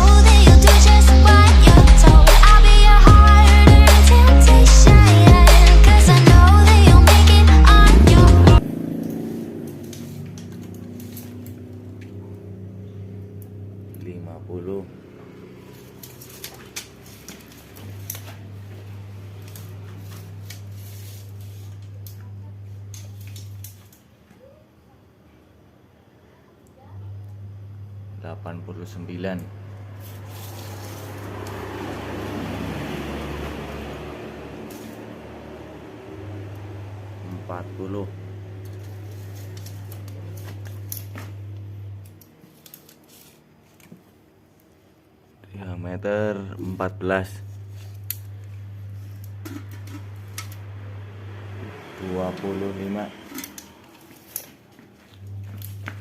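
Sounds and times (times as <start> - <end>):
low electrical hum: 10.3 - 31.5, 34.2 - 56.0.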